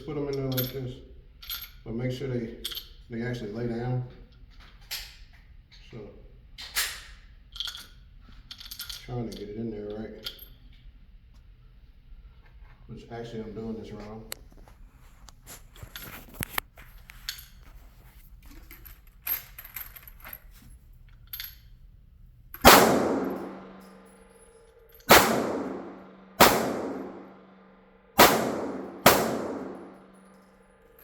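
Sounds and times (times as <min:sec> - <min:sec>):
echoing gunshots: 0:22.6 - 0:23.9, 0:25.1 - 0:27.6, 0:28.2 - 0:30.2
pistol magazine clicks: 0:22.6 - 0:23.9, 0:25.1 - 0:27.3, 0:28.2 - 0:30.0.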